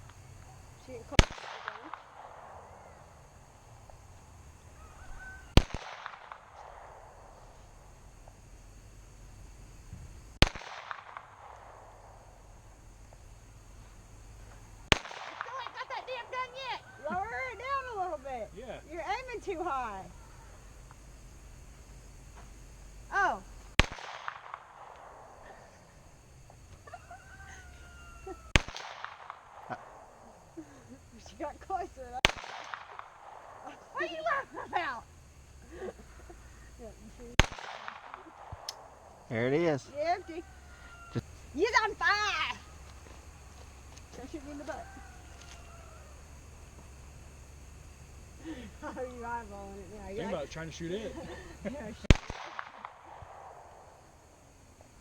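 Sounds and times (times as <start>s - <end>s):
pistol shot: 1.2s - 3.1s, 5.5s - 7.6s, 10.4s - 12.4s, 14.9s - 15.8s, 23.7s - 25.5s, 28.5s - 30.2s, 32.2s - 33.7s, 37.4s - 39.3s, 52.1s - 54.0s
rooster crowing: 4.5s - 5.7s, 16.2s - 20.8s, 26.6s - 28.6s, 39.6s - 46.8s.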